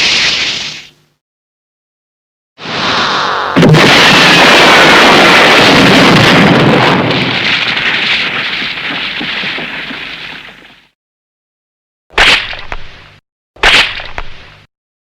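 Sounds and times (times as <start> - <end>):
explosion blast: 2.6 - 9.7.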